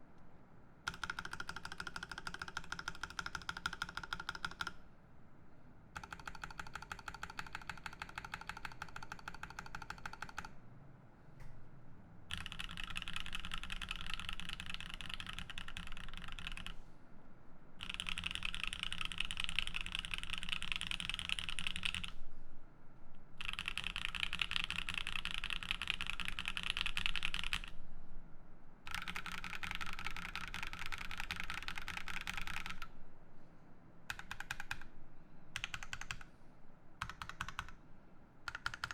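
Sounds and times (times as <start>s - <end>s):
mechanical keyboard typing: 0.9s - 4.8s, 6.0s - 10.6s, 12.3s - 16.8s, 17.8s - 22.2s, 23.4s - 27.8s, 28.9s - 32.9s, 34.1s - 34.9s, 35.6s - 36.3s, 37.0s - 37.8s, 38.5s - 38.9s.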